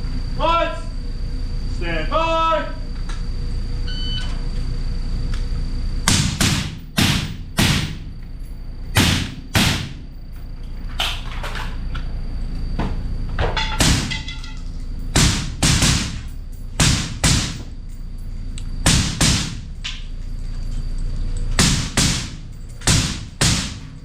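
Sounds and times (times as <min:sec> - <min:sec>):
short electronic beep: 0:03.8 - 0:04.4.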